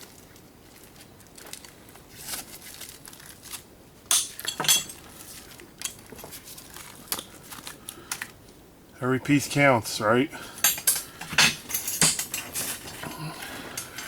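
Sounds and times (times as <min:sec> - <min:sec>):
small metal parts clinking: 0:04.1 - 0:05.1, 0:10.5 - 0:14.0.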